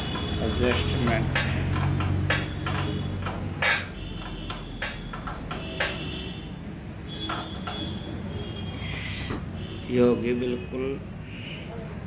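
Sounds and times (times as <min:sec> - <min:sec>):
spanner clinking on metal: 0:00.0 - 0:06.2.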